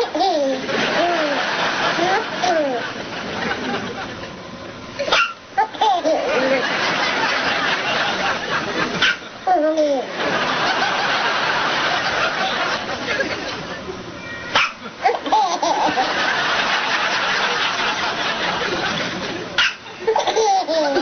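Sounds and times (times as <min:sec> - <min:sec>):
baby laughing: 0:00.0 - 0:03.0, 0:05.0 - 0:06.8, 0:08.9 - 0:10.2, 0:14.5 - 0:16.2, 0:19.6 - 0:21.0.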